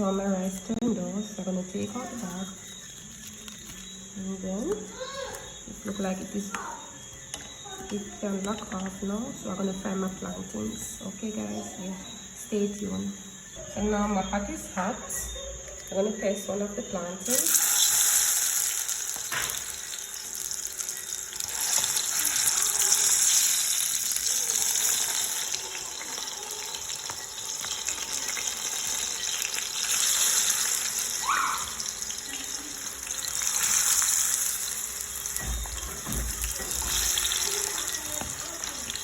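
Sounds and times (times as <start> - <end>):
food sizzling in hot oil: 17.2 - 39.0.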